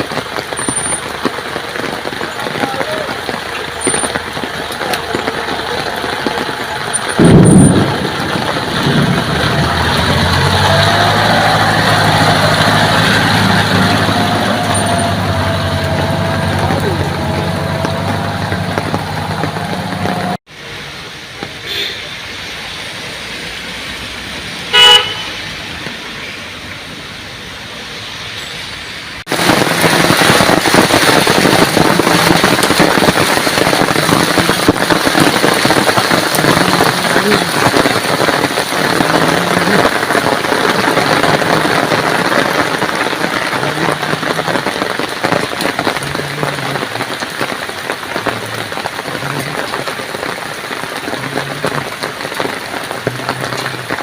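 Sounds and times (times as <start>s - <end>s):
heavy rain pattering: 0.0s - 54.0s
street traffic: 0.0s - 54.0s
car horn honk: 21.6s - 22.1s, 24.7s - 25.5s.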